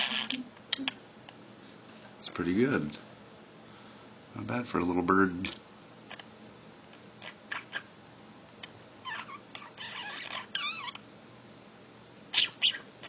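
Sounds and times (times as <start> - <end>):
budgerigar chirping and chattering: 7.2 - 7.9, 9.0 - 11.0, 12.3 - 12.9
budgerigar whistles: 12.3 - 12.9.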